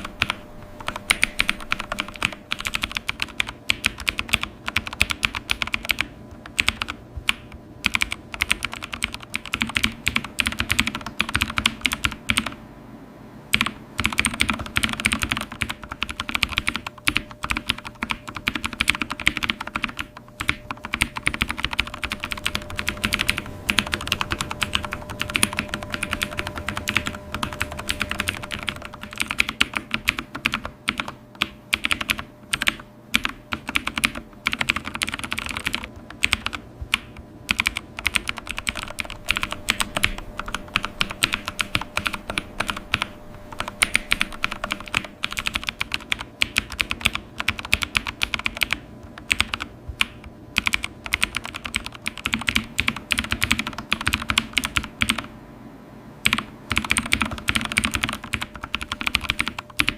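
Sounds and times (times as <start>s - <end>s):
keyboard key clicks: 13.6s - 55.3s, 56.3s - 59.9s.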